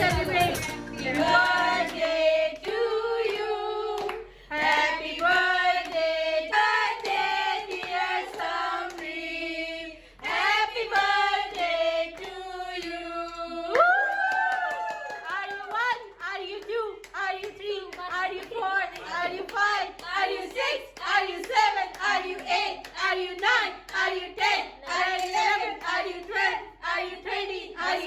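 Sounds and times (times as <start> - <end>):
voices singing together: 0.0 - 28.0
hand claps: 1.3 - 6.1, 6.9 - 9.2, 10.2 - 24.2.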